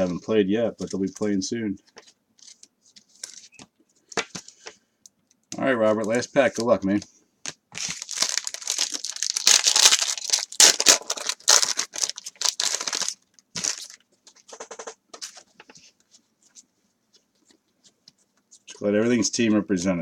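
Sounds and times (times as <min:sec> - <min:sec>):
foil wrapper tearing and crinkling: 0:07.8 - 0:14.0.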